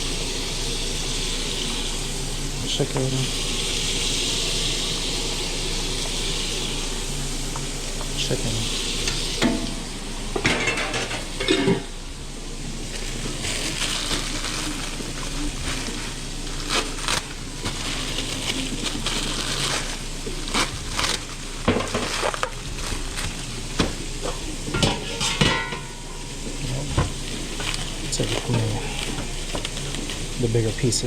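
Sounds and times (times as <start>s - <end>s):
chicken sizzling in a pan: 0.0s - 31.0s
pans and utensils clattering: 9.0s - 12.0s, 21.6s - 30.1s.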